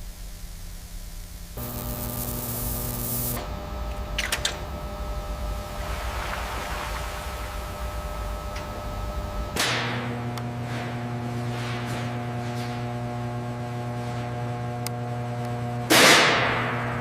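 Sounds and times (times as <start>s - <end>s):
low electrical hum: 0.0s - 17.0s
loud hissing burst: 1.6s - 3.6s, 5.1s - 9.6s
steady tones: 1.6s - 10.4s.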